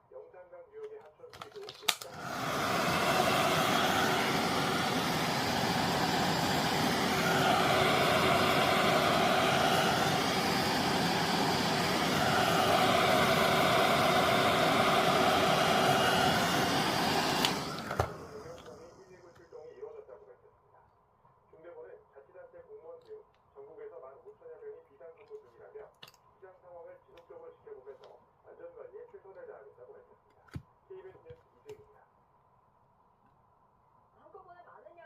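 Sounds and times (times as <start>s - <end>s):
electric blower motor running: 2.0s - 19.0s.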